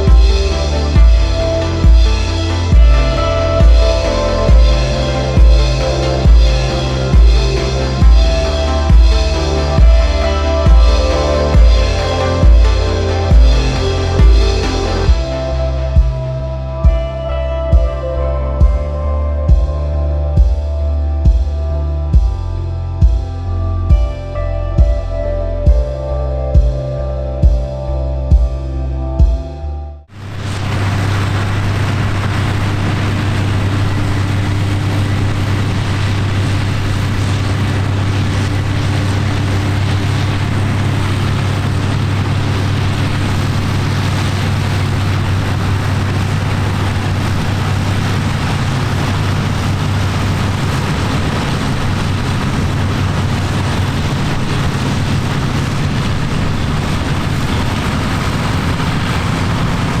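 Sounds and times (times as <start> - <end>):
engine humming steadily: 0.0 - 28.6, 30.1 - 60.0.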